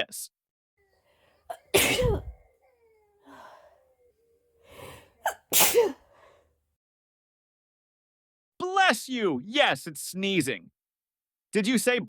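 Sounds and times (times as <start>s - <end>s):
drawn-in breaths: 0.8s - 6.5s
person sneezing: 1.5s - 3.9s, 4.7s - 6.2s.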